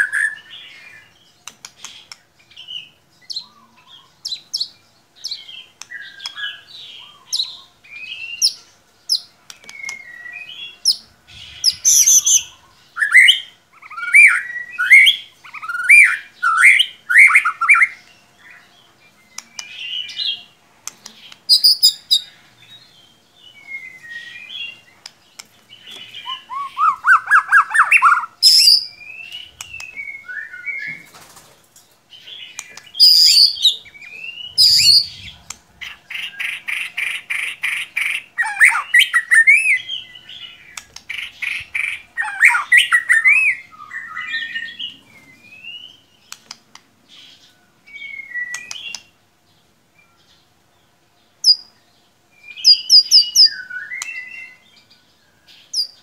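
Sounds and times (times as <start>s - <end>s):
bird singing whistled phrases: 9.6s - 18.0s, 23.5s - 24.8s, 26.0s - 31.0s, 32.8s - 35.4s, 36.2s - 46.0s, 47.9s - 49.1s, 52.4s - 56.0s.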